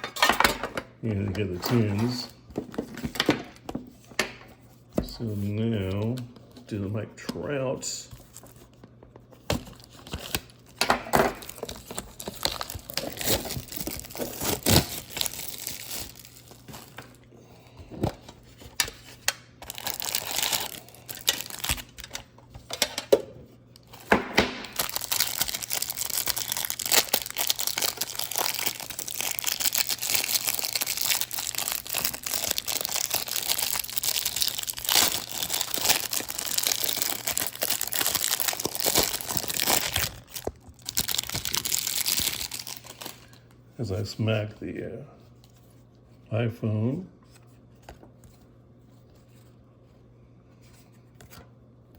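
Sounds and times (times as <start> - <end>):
wrapper crinkling and tearing: 8.2 - 17.2, 18.5 - 22.8, 23.7 - 43.4.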